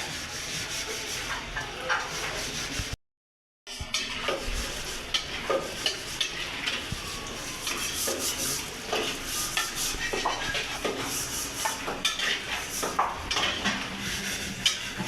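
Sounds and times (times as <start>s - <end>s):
spatula scraping frying pan: 0.0s - 3.0s, 3.7s - 15.0s
food sizzling: 3.8s - 15.0s.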